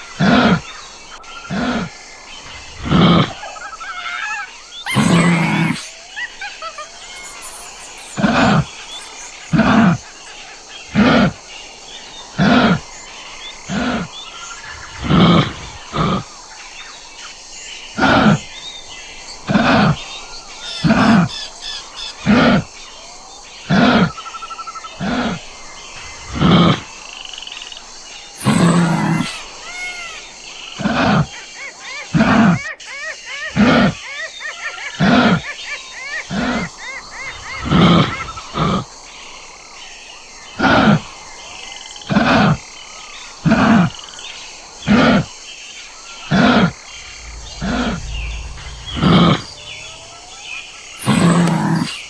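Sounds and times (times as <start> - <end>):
birds chirping faintly: 3.4 - 26.1, 27.0 - 30.8, 46.8 - 52.0
kangaroo short low calls: 4.9 - 6.0, 28.4 - 30.1.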